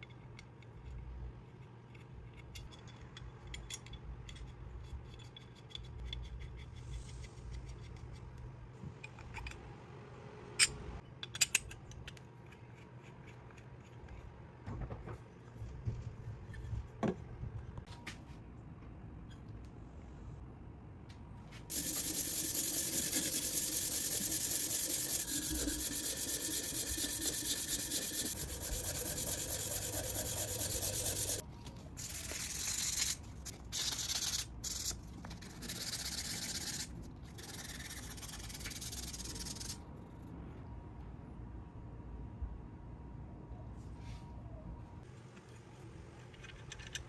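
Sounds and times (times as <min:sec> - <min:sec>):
plane sole rubbed on abrasive: 0:21.7 - 0:31.4.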